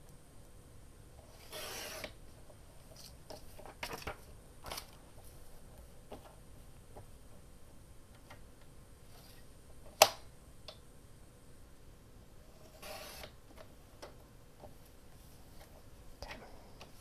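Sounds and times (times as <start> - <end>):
paper rustling: 2.8 - 5.5.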